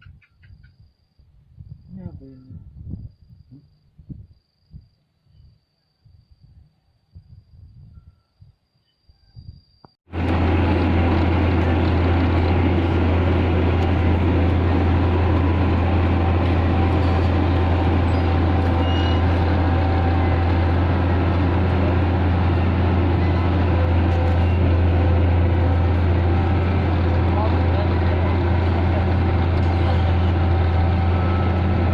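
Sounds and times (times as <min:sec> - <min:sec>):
heavy diesel engine humming: 0:10.1 - 0:31.9.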